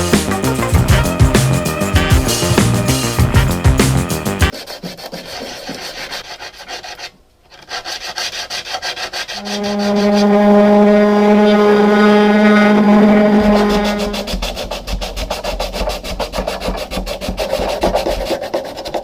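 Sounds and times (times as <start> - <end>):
abrasive rubbing on metal: 0.0 - 4.5, 9.4 - 17.0
running tool hum: 0.0 - 4.5, 10.3 - 14.4.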